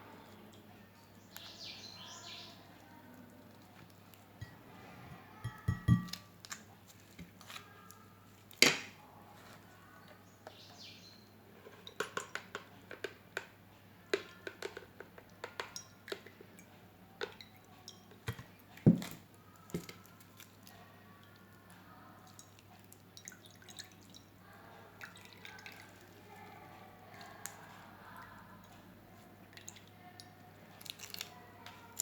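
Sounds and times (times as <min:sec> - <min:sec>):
kitchenware knocking and clinking: 0:05.4 - 0:06.2.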